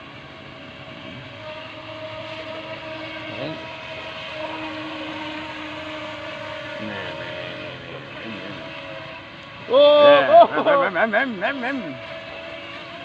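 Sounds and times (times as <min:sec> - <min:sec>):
electric motor whine: 0:00.0 - 0:13.0
hull hissing on water: 0:00.1 - 0:13.0.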